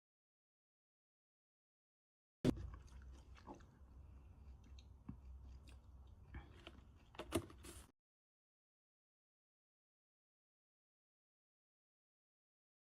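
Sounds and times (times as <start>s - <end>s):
chewing and crunching: 2.5s - 7.9s.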